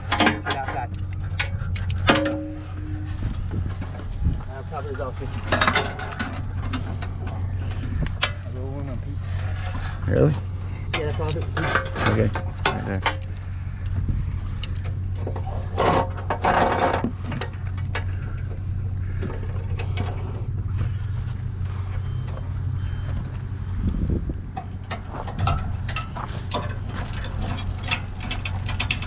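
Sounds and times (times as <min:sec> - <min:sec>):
metal clanks and knocks: 0:00.0 - 0:08.6, 0:10.9 - 0:13.4, 0:14.7 - 0:18.4, 0:24.5 - 0:29.0
vehicle engine idling: 0:00.0 - 0:29.0.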